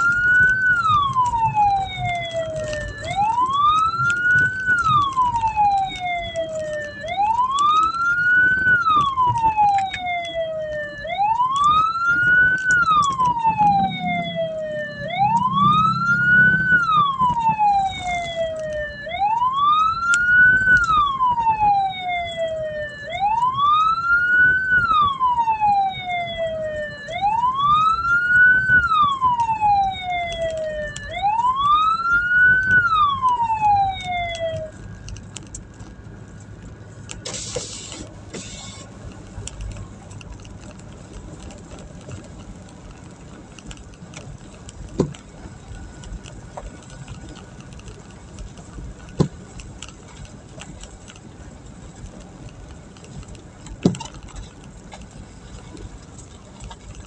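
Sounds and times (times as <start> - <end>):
electronic siren wailing: 0.0 - 35.1.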